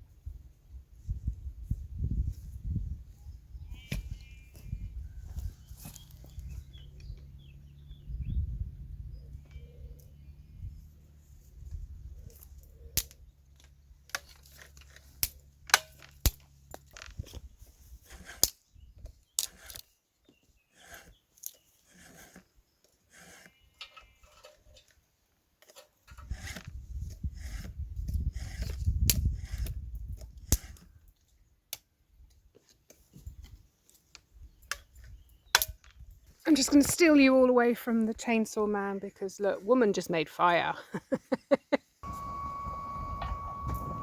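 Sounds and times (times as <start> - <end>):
twigs snapping and crackling: 12.3 - 17.4, 35.5 - 36.0.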